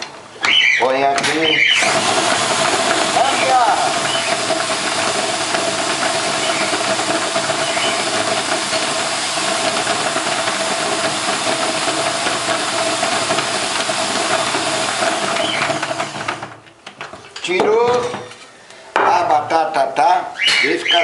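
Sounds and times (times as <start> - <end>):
electric drill motor whine: 1.5 - 16.6.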